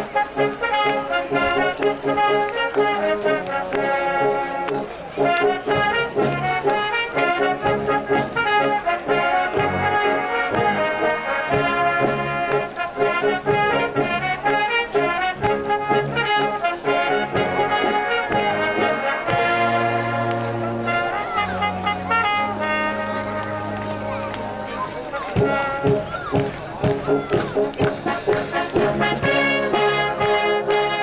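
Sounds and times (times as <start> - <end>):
brass band playing: 0.0 - 31.0
drum beat: 23.4 - 30.9.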